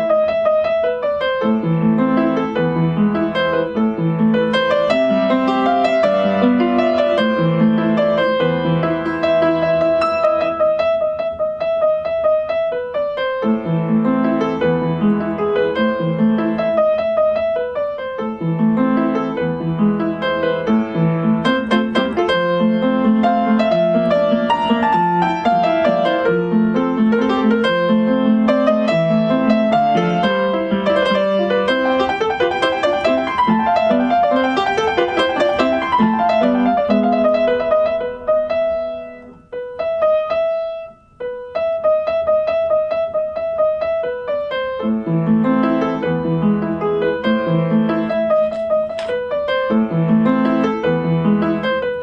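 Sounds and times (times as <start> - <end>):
solo piano christmas piece: 0.0 - 52.0.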